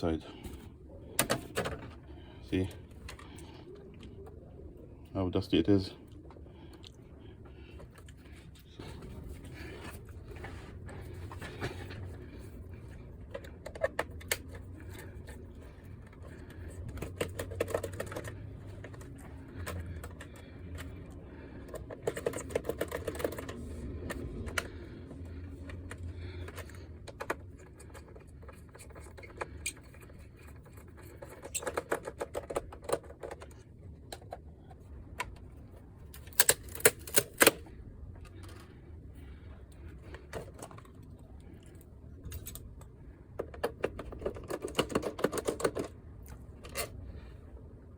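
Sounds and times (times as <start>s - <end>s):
faint low hum: 0.0s - 47.9s
plastic parts clicking and tapping: 1.2s - 2.0s, 10.9s - 38.7s, 39.7s - 47.0s.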